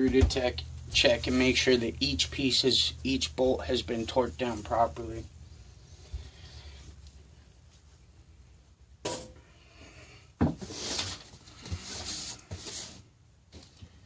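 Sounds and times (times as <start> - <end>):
rubbing and shuffling: 0.0 - 8.3, 10.6 - 13.8.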